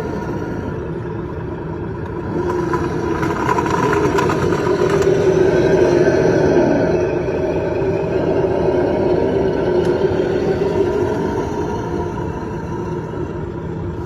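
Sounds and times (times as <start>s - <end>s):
electric motor and gears whining: 0.0s - 14.0s.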